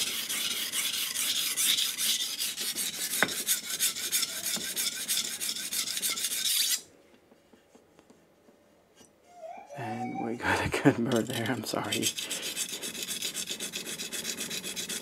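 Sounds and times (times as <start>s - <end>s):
knife scraping on whetstone: 0.0s - 6.9s, 11.2s - 15.0s.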